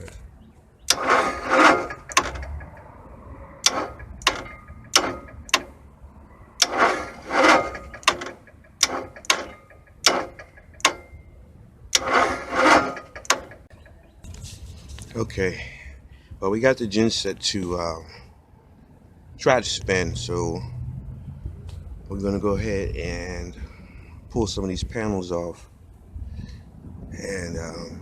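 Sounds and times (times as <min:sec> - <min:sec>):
starter motor cranking: 0:00.9 - 0:03.0, 0:03.6 - 0:05.8, 0:06.6 - 0:11.2, 0:11.9 - 0:13.8.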